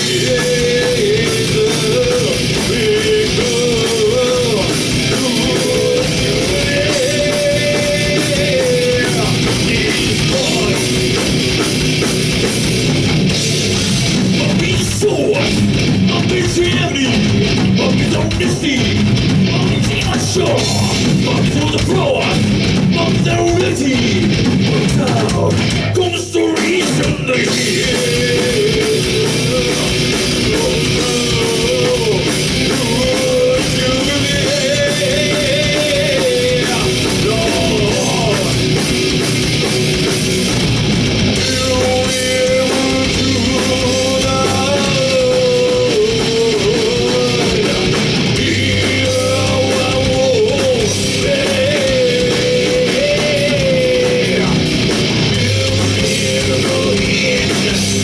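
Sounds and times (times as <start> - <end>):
person singing: 0.0 - 11.0, 23.0 - 38.9, 41.4 - 54.7, 55.3 - 58.0
rock band playing live: 0.0 - 58.0.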